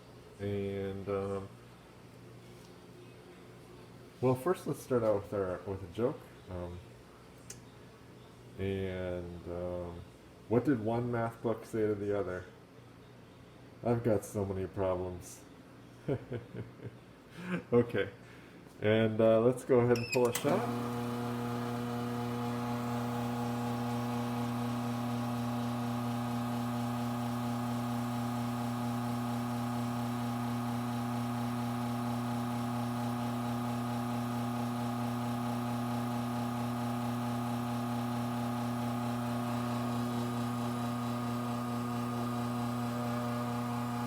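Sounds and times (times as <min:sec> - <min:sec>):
espresso machine pump humming: 0:20.2 - 0:44.0.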